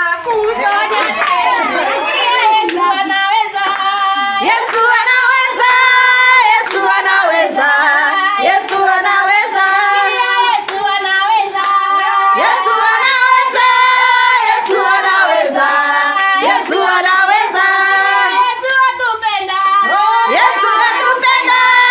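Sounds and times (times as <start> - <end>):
women singing together: 0.0 - 21.9
hand clapping: 0.2 - 13.1.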